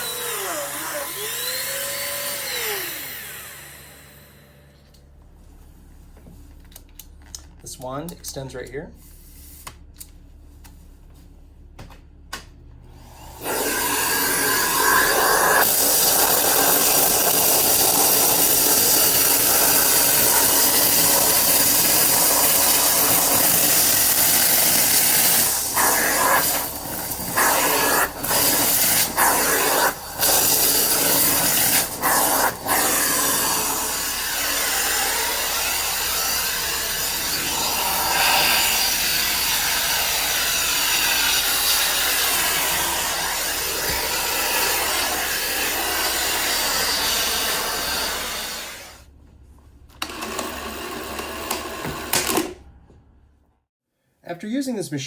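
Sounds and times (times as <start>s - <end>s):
vacuum cleaner suction rush: 0.0s - 4.7s, 12.9s - 49.0s
vacuum tool rubbing over surfaces: 13.0s - 49.0s.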